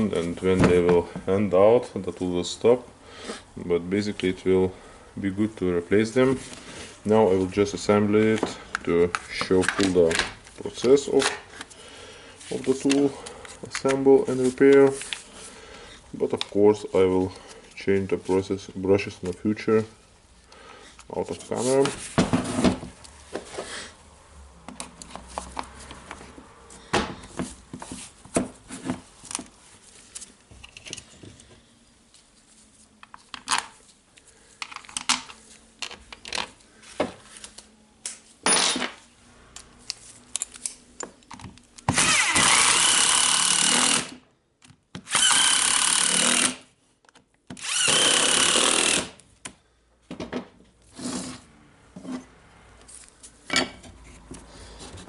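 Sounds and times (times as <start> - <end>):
electric screwdriver whining: 41.9 - 44.2, 45.1 - 46.6, 47.6 - 49.1.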